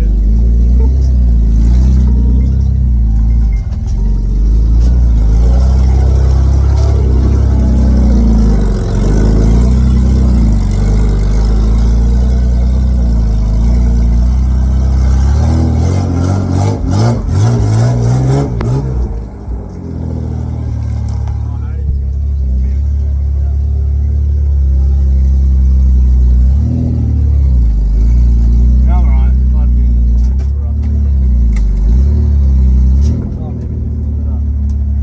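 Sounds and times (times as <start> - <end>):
loud engine running and revving: 0.0 - 35.0.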